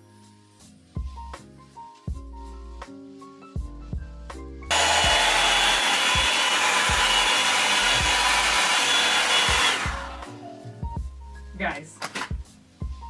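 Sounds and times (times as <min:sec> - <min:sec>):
background music with beat: 0:00.0 - 0:13.0
hot-air brush blowing: 0:04.7 - 0:10.4.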